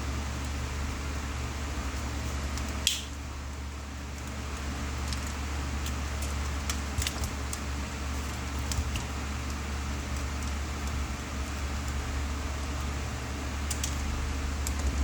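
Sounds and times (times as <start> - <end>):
steady low hum: 0.0 - 15.0
small clicks and taps: 13.6 - 14.0, 14.6 - 15.0.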